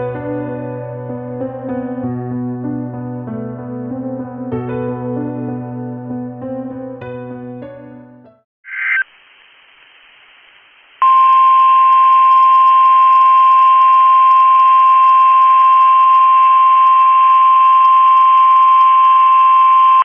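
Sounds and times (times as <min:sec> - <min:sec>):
radio hiss: 0:08.6 - 0:11.2.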